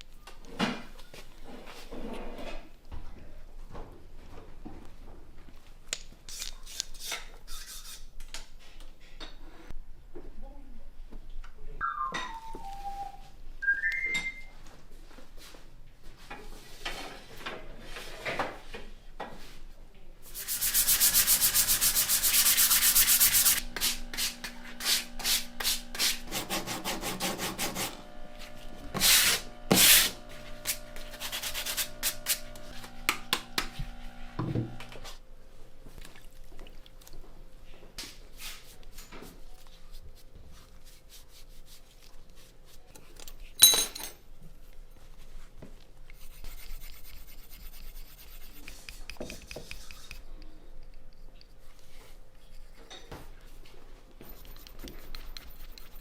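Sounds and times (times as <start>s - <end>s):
hand sanding ceramic: 20.3s - 34.8s, 46.1s - 50.2s, 54.3s - 56.0s
steady hum: 20.3s - 35.1s
small power tool running: 20.4s - 35.0s.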